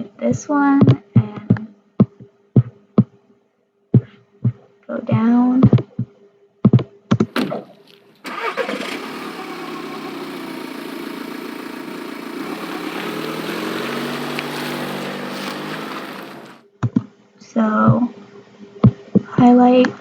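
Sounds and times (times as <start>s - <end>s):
car engine starting and running: 8.2s - 16.6s.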